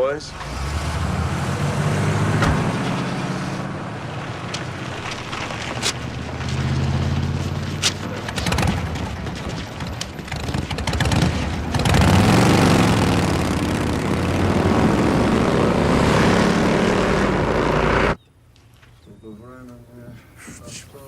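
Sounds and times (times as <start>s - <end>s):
motorcycle engines running: 1.5s - 18.2s.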